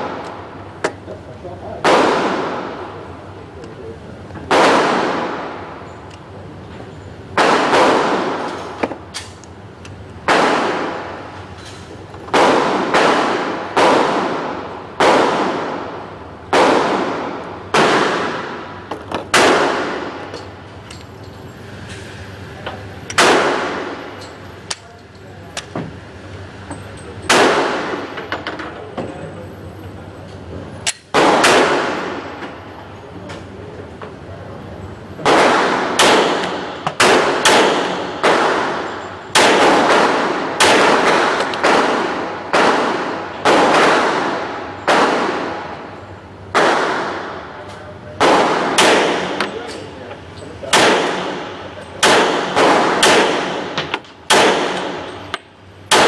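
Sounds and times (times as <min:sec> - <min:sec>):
handgun shots echoing: 0:01.8 - 0:02.8, 0:04.5 - 0:05.7, 0:07.4 - 0:09.4, 0:12.3 - 0:15.9, 0:23.1 - 0:24.9, 0:27.3 - 0:28.6, 0:30.8 - 0:32.2, 0:35.2 - 0:45.6, 0:46.5 - 0:47.4, 0:48.2 - 0:49.9, 0:50.7 - 0:55.3.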